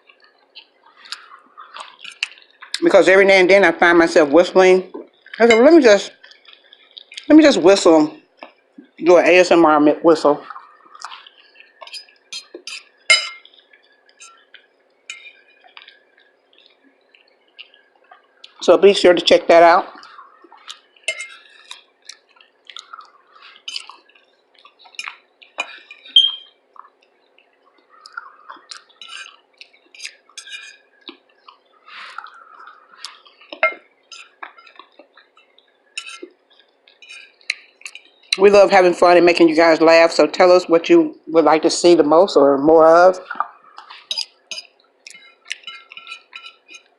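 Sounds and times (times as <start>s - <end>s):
wet chewing and mouth smacking: 0.0s - 2.9s, 4.9s - 7.4s, 8.2s - 9.0s, 10.4s - 18.6s, 19.9s - 38.4s, 43.2s - 46.9s
cutlery clicks and clinks: 11.9s - 13.4s, 21.1s - 21.4s, 23.7s - 23.9s, 30.0s - 30.8s, 36.0s - 36.3s, 44.1s - 46.9s.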